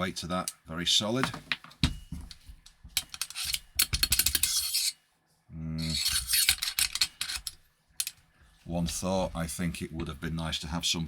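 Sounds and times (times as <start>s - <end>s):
metal parts clicking and scraping: 3.0s - 5.0s, 5.8s - 8.2s.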